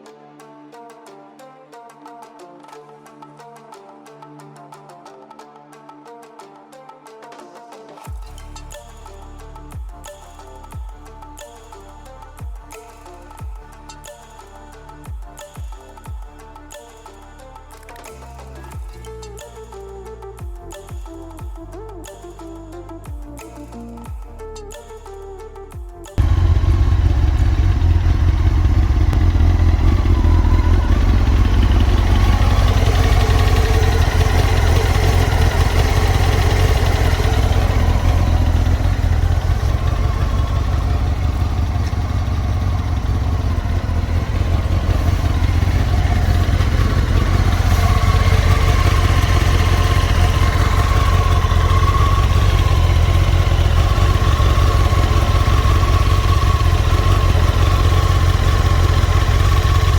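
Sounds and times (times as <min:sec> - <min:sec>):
motorcycle engine running steadily: 0:26.2 - 0:59.9.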